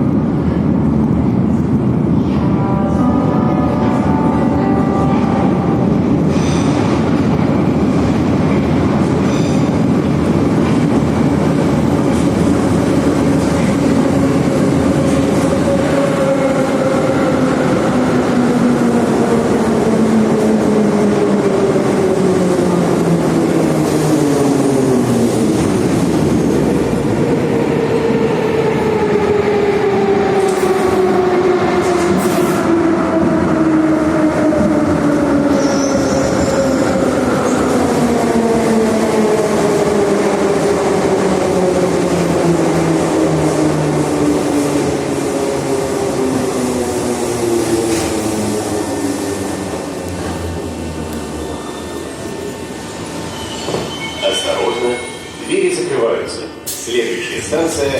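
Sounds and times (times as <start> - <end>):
metro train rail rumble: 0.0 - 57.9.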